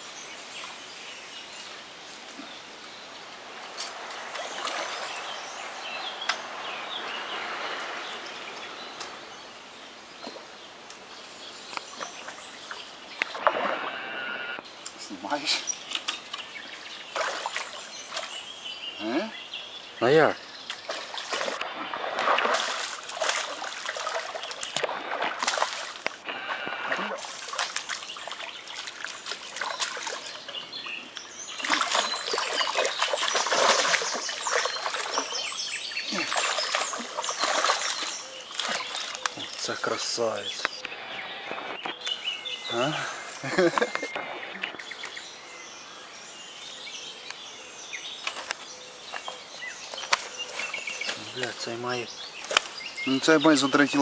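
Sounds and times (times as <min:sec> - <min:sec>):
small birds chirping: 0:00.0 - 0:54.0
water splashing: 0:03.3 - 0:09.4, 0:11.5 - 0:19.3, 0:20.1 - 0:42.0.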